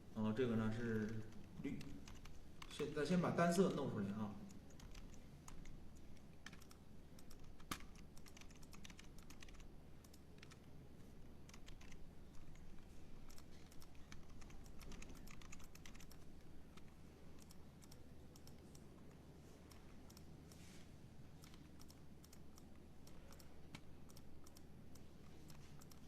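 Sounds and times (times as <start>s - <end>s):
steady low hum: 0.0s - 26.0s
typing on keyboard: 1.0s - 3.1s, 4.5s - 10.7s, 11.4s - 18.8s, 21.4s - 26.0s.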